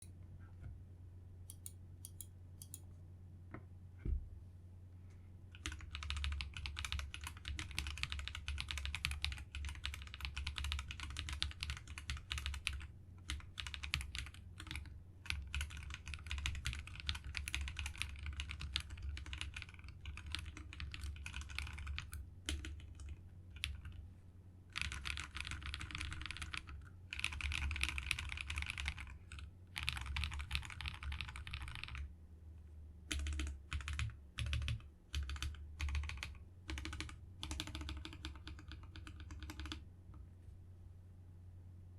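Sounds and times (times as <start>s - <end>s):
mechanical keyboard typing: 5.6s - 24.0s, 24.7s - 32.1s, 33.1s - 39.8s.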